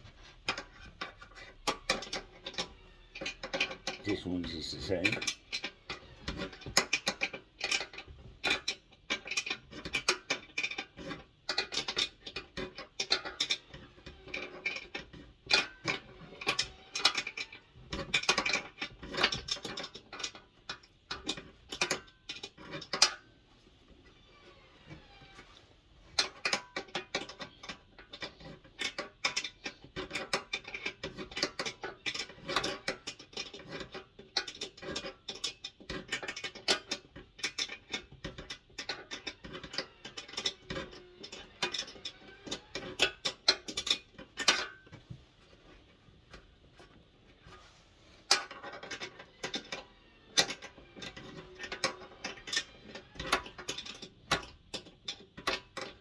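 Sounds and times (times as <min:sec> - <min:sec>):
tools clinking against metal: 0:00.4 - 0:08.0.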